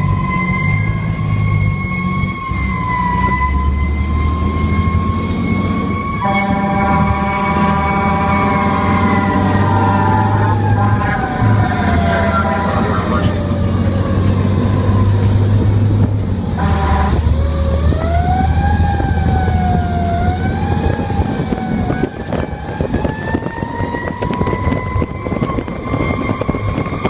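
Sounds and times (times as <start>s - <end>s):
engine rumble: 0.0s - 27.0s
fire engine siren wailing: 0.0s - 27.0s
horn blast: 6.2s - 13.4s, 16.6s - 17.3s.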